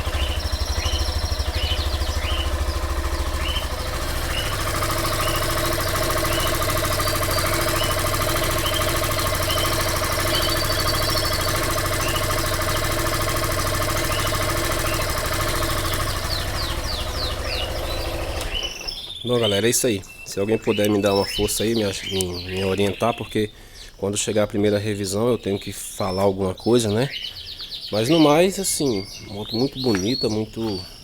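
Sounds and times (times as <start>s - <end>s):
motorcycle engine idling: 0.0s - 19.2s
birds chirping faintly: 0.0s - 31.0s.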